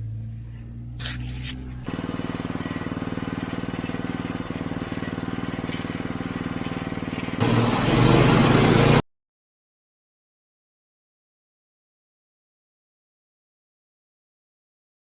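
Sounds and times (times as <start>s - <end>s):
band saw blade cutting log: 1.0s - 9.0s
sawmill engine running: 1.2s - 9.0s.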